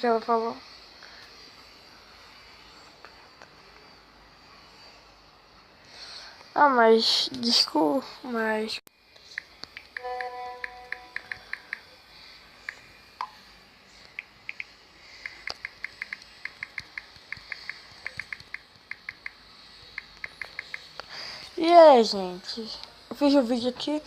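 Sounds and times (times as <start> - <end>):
phone keyboard clicks: 9.6 - 11.8, 15.2 - 19.4, 20.0 - 20.9
brief steady tone: 10.0 - 11.6.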